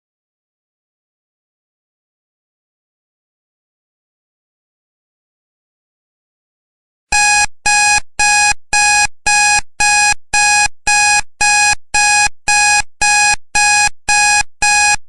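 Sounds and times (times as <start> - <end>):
electronic alarm beeping: 7.2 - 15.0.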